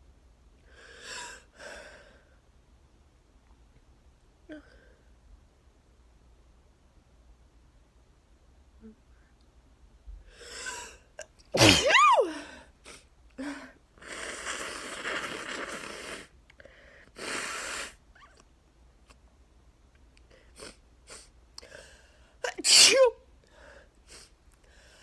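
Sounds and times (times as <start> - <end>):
nose blowing: 11.6 - 12.2, 14.0 - 16.3, 17.2 - 18.0
person sneezing: 11.6 - 12.5, 22.5 - 23.2.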